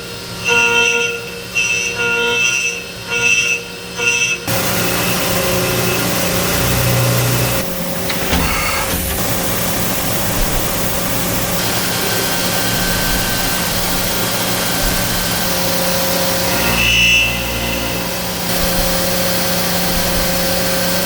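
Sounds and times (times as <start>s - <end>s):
lathe machine hum: 4.4s - 21.0s.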